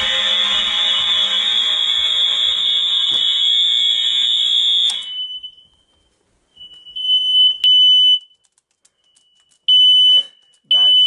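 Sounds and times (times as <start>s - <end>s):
fire alarm horn tone: 0.0s - 5.8s
smoke alarm beep: 0.0s - 8.4s, 9.1s - 11.0s.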